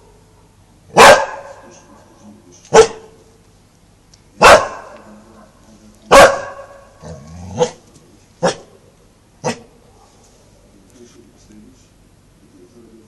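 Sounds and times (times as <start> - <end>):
dog barking: 0.9 - 1.8, 2.7 - 3.2, 4.4 - 5.1, 6.1 - 7.8, 8.4 - 8.7, 9.4 - 10.1.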